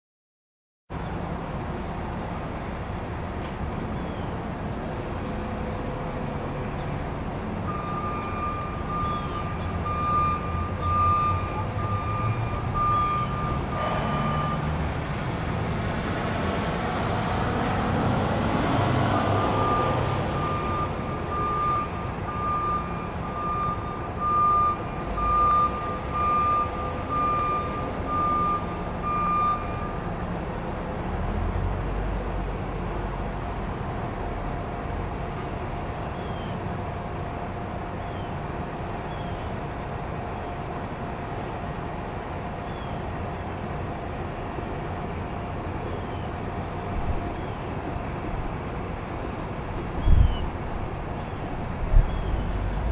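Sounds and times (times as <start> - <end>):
low engine rumble: 0.9 - 52.9
truck reversing alarm beeping: 5.2 - 14.9, 18.8 - 30.4.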